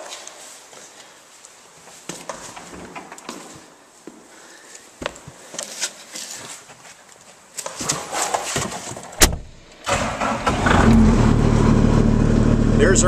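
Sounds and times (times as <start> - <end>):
cab door clicks and knocks: 9.2 - 9.6
door banging shut: 9.2 - 9.7.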